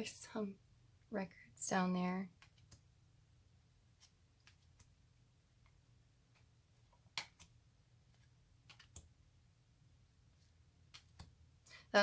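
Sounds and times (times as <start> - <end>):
cards clicking and tapping: 6.4 - 9.1, 10.9 - 11.4.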